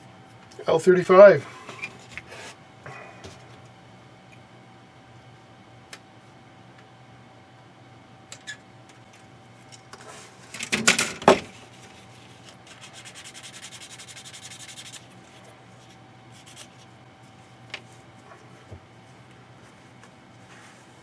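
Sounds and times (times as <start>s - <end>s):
fast rasping strokes: 12.6s - 15.1s.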